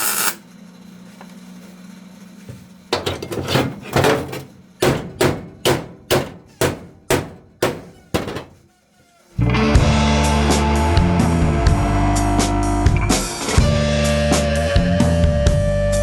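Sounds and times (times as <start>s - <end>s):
hammer striking sheet metal: 3.0s - 8.6s.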